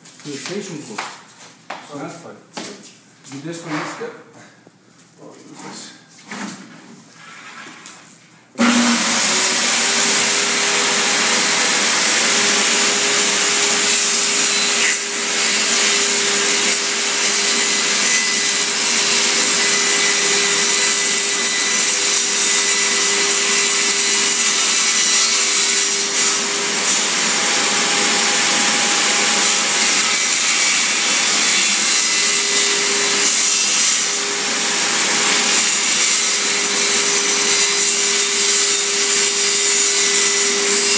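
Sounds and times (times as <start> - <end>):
power tool cutting wood: 8.6 - 40.9.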